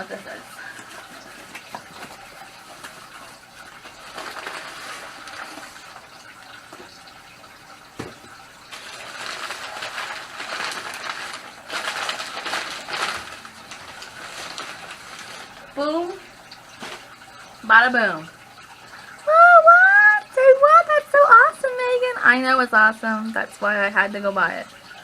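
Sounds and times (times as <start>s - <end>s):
packaging rustling and tearing: 0.6s - 6.2s, 8.6s - 15.8s, 16.7s - 17.3s
knock: 8.0s - 8.2s.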